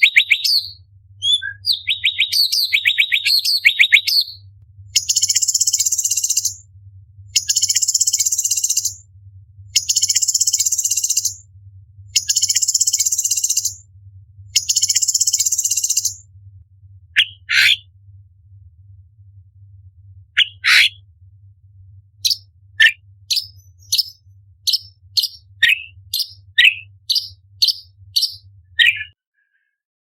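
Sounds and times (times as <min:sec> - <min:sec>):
faint low hum: 0:00.0 - 0:28.8
bird singing sharp notes: 0:22.2 - 0:29.2.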